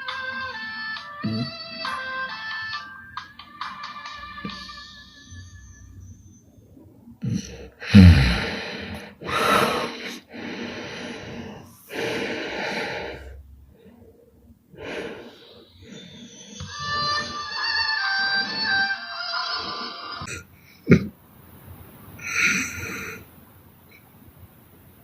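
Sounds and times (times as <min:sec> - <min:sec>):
woman snoring: 0:07.2 - 0:13.4, 0:14.8 - 0:18.9, 0:22.2 - 0:23.3.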